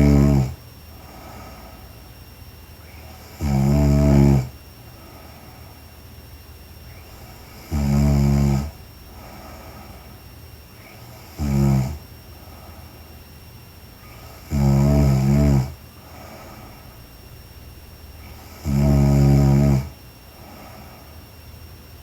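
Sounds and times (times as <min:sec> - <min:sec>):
woman snoring: 0:00.0 - 0:00.6, 0:03.1 - 0:04.6, 0:07.2 - 0:09.7, 0:11.0 - 0:12.0, 0:14.1 - 0:16.8, 0:18.2 - 0:20.8.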